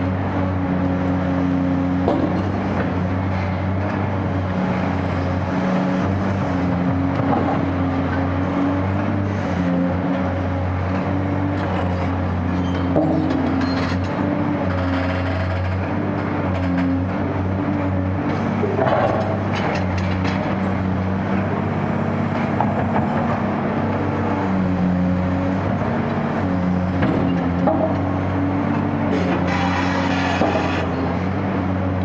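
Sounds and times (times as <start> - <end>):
excavator diesel engine running: 0.0 - 32.0.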